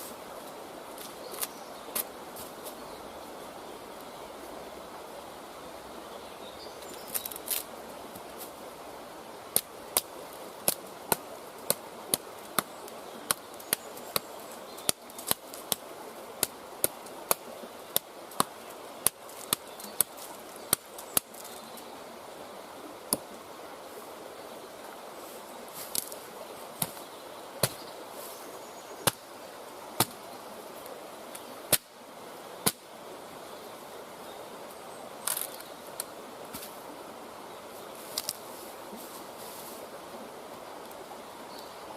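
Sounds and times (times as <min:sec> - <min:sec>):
twigs snapping: 0:01.0 - 0:02.5, 0:07.1 - 0:08.3, 0:09.5 - 0:21.6, 0:25.8 - 0:26.2, 0:27.6 - 0:27.8, 0:35.2 - 0:36.8, 0:38.0 - 0:38.5.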